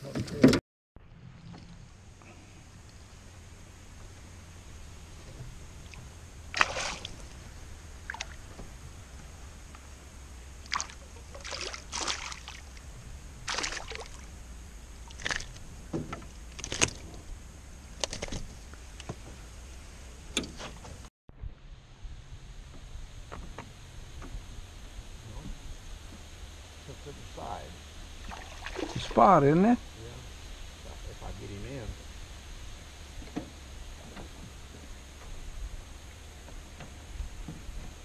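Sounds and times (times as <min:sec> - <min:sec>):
water splashing and sloshing: 0:05.2 - 0:08.7, 0:10.6 - 0:14.4, 0:15.0 - 0:17.2, 0:28.2 - 0:29.4.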